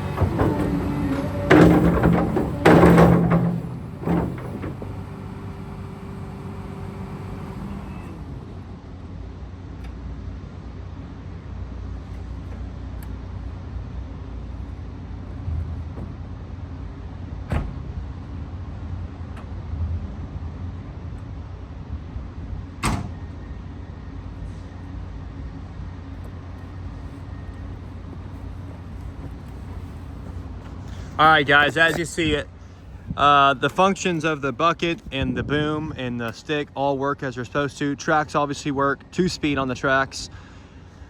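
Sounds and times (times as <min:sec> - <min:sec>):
engine surges: 0:00.0 - 0:09.7
excavator diesel engine humming: 0:00.0 - 0:11.5, 0:23.3 - 0:41.0.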